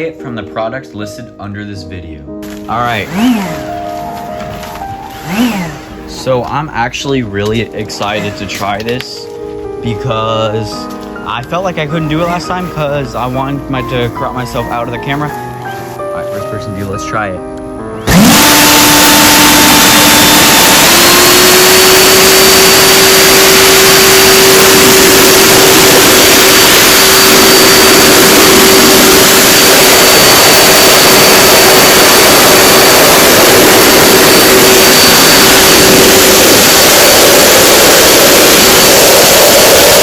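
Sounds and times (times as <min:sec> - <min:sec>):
leaf blower running: 0:02.4 - 0:06.8, 0:07.4 - 0:09.0, 0:18.0 - 0:40.0.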